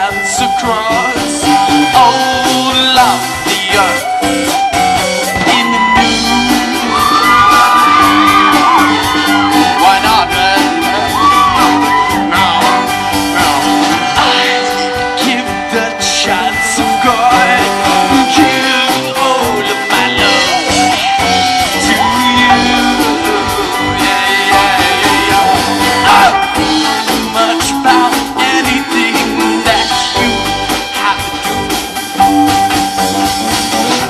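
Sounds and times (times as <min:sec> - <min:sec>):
guitar: 0:00.0 - 0:34.0
live band playing upbeat song: 0:00.0 - 0:34.0
person singing: 0:00.0 - 0:34.0.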